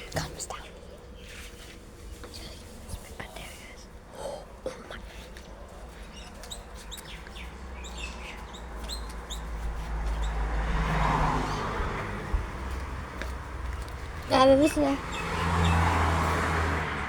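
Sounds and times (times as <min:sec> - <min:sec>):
small bird chirping: 0:05.9 - 0:10.4, 0:13.6 - 0:15.9.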